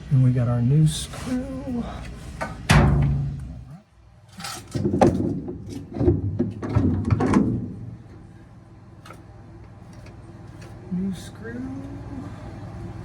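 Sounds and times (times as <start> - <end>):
tools and parts knocking and clattering: 4.4 - 7.9.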